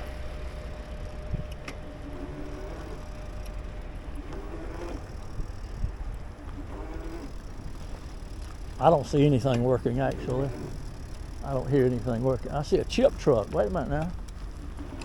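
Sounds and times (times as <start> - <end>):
wind rumble on microphone: 0.0 - 8.4
bicycle road noise: 0.0 - 15.0.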